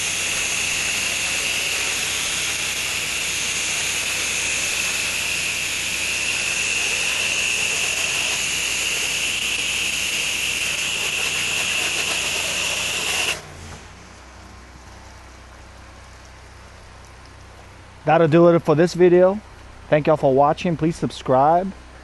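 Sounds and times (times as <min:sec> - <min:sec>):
pressure washer spraying water: 0:00.0 - 0:14.2.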